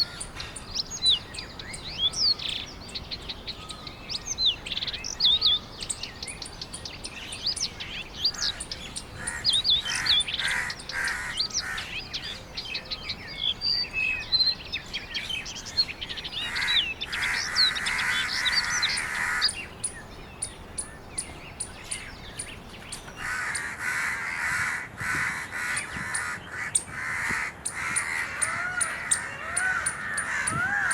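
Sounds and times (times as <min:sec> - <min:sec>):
birds chirping and whistling: 0:00.0 - 0:23.4
harsh raspy bird calls: 0:00.0 - 0:30.9.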